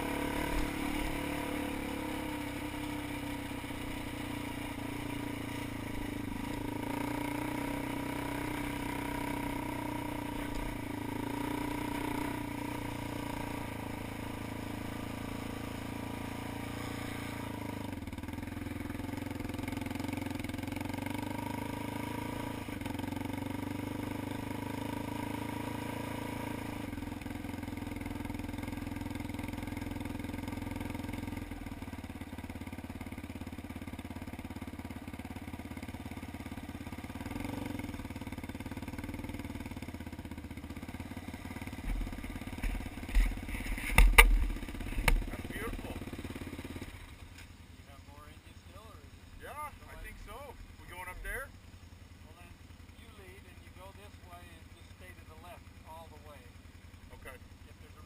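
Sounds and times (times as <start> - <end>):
atv engine running: 0.0 - 58.0.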